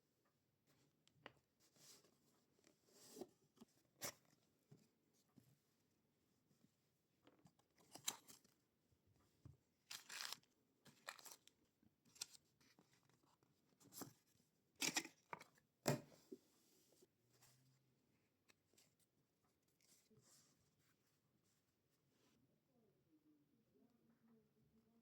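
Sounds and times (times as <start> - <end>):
packaging being opened by hand: 9.9 - 11.5.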